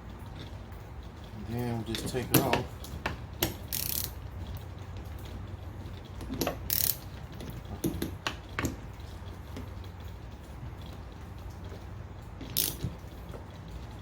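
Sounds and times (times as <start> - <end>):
ratchet pawl clicking: 1.5 - 4.6, 6.1 - 8.7, 12.5 - 13.0.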